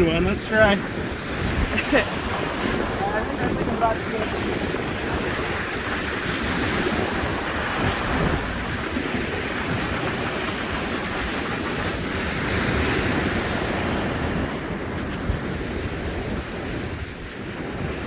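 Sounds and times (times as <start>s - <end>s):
surf breaking on shore: 0.0s - 18.0s
wind buffeting microphone: 0.0s - 18.0s.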